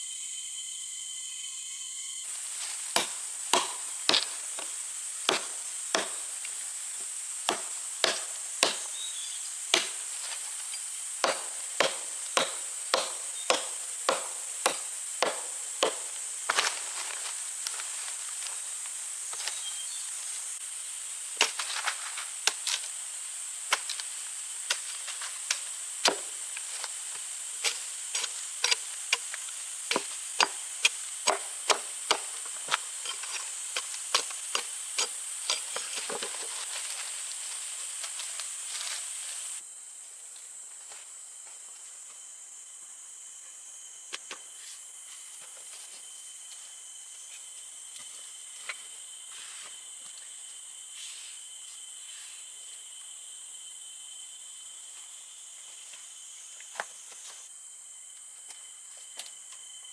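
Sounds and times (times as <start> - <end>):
high insect drone: 0.0 - 59.9
chopping strikes on wood: 2.9 - 6.5, 7.4 - 9.1, 9.7 - 10.3, 11.2 - 16.7, 25.5 - 26.4, 27.6 - 36.4.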